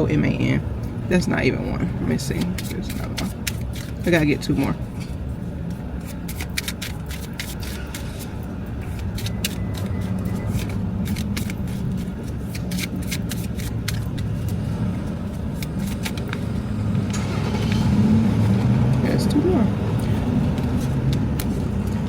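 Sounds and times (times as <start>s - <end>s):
car engine humming: 0.0s - 22.0s
cards being shuffled: 2.2s - 16.5s, 19.0s - 21.7s.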